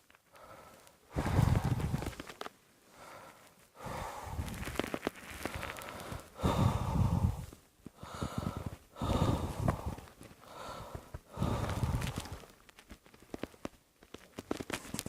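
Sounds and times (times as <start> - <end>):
person breathing hard: 0.3 - 2.3, 2.9 - 12.6.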